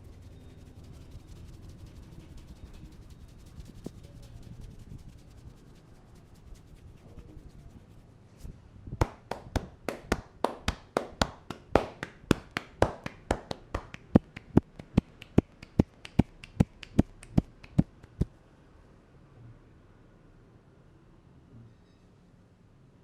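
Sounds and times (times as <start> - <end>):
hands slapping a head: 9.0 - 18.3.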